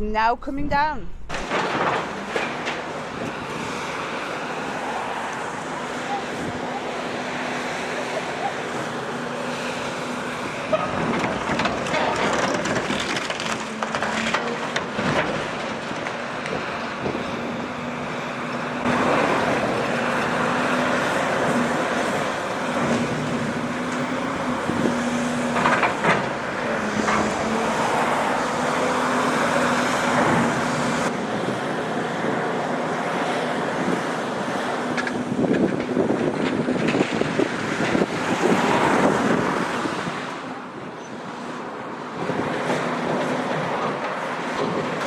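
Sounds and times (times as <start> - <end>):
engine drone: 1.1 - 45.0
passing road traffic: 1.2 - 45.0.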